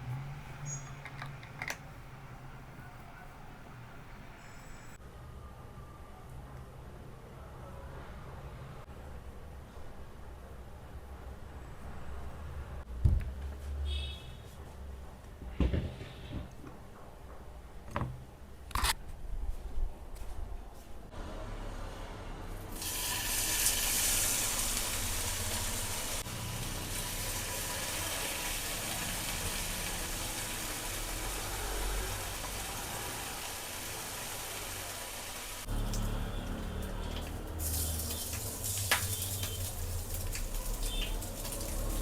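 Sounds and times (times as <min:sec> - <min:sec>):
water running from tap: 0:22.7 - 0:42.0.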